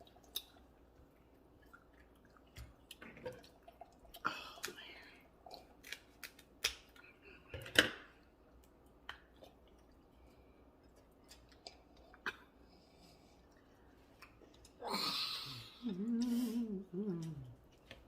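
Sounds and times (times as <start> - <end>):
crab shells cracking: 5.6 - 7.0.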